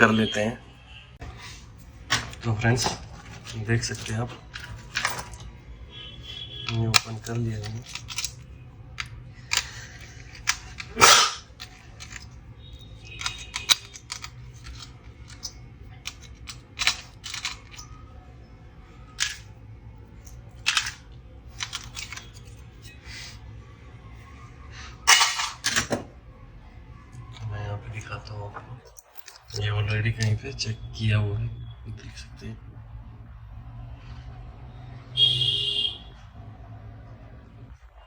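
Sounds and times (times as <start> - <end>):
laptop parts clicking and knocking: 6.4 - 18.0, 20.2 - 22.6.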